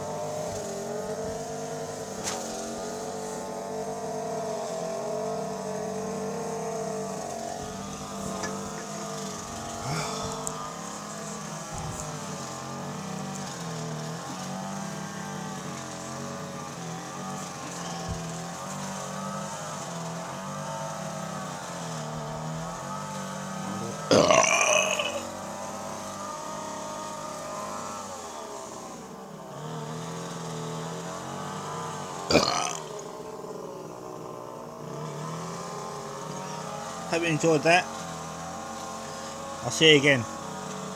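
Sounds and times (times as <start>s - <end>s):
steady motor drone: 0.0s - 40.9s
man burping: 9.7s - 10.6s, 23.7s - 25.3s, 32.3s - 33.0s.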